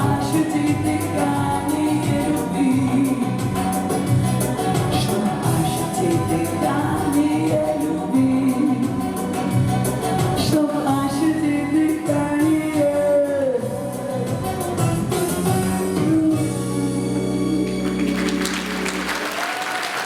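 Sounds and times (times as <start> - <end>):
woman singing pop song: 0.0 - 14.6.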